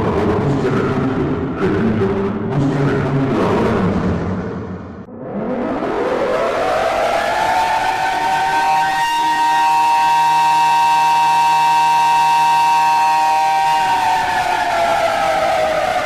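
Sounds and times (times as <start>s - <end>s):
emergency alert siren: 5.1s - 16.0s.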